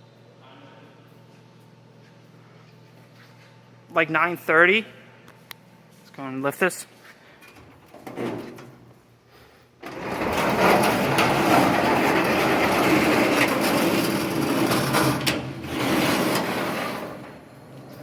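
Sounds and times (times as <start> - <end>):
garage door rollers rattling: 7.6 - 8.8, 9.8 - 18.0.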